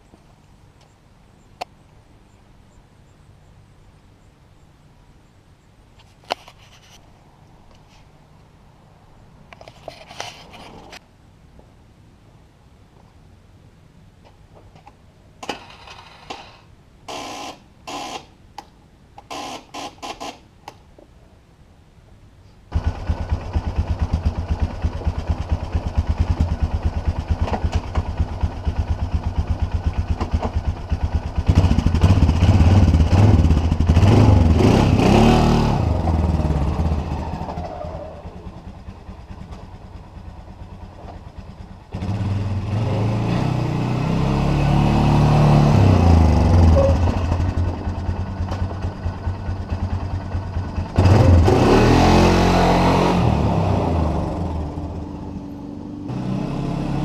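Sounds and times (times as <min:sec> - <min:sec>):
atv engine idling and revving: 0:22.7 - 0:57.0.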